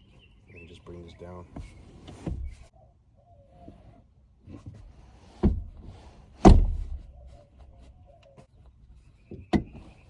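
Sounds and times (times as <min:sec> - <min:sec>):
car seat knocking into place: 0:02.2 - 0:02.6, 0:06.4 - 0:07.0.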